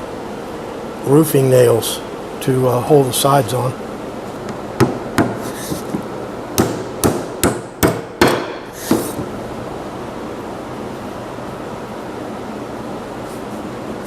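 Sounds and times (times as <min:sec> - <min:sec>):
hammer driving nails into wood: 0:04.5 - 0:06.0, 0:06.6 - 0:09.2.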